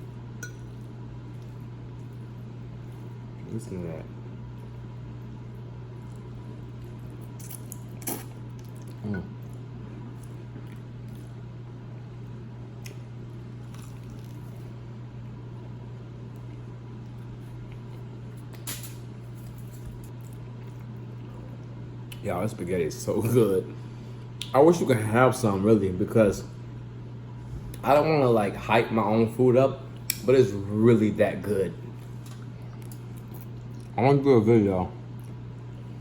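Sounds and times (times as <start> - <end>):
steady low hum: 0.0 - 36.0
wet squishy spaghetti sounds: 6.0 - 11.4, 13.6 - 14.7.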